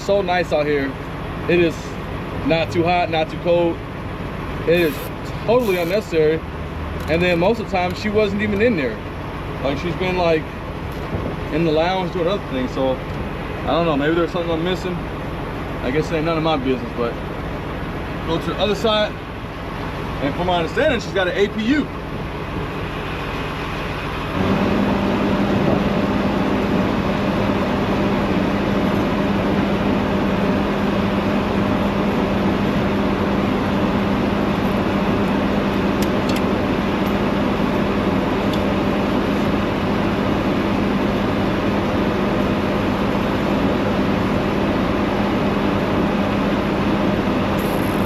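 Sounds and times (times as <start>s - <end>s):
vehicle engine idling: 0.0s - 48.0s.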